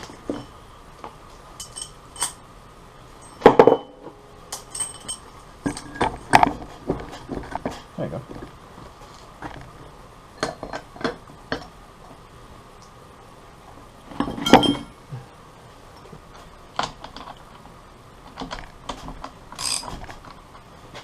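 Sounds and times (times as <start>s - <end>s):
metal parts clicking and clinking: 1.6s - 2.4s, 4.5s - 6.5s, 19.6s - 20.2s
metal tools clattering: 1.6s - 2.4s, 4.6s - 6.4s, 14.2s - 15.0s.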